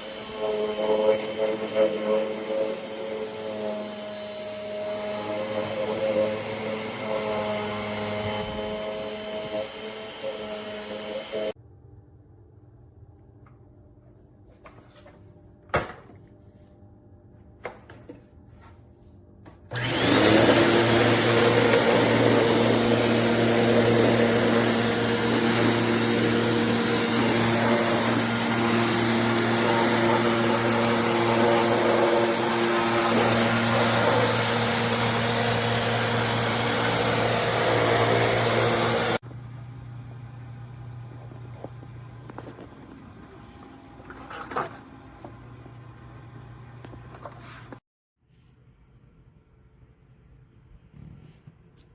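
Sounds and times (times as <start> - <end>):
vacuum cleaner motor running: 0.0 - 11.6, 19.7 - 47.8.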